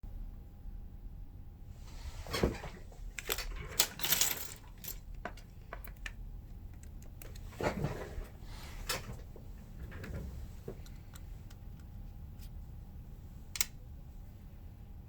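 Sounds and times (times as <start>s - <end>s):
small tools clicking and clattering: 3.2s - 7.5s.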